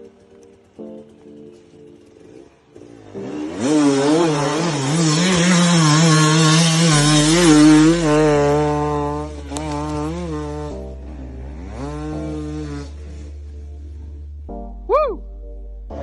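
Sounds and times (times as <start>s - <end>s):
off-road vehicle engine revving: 2.2s - 14.2s.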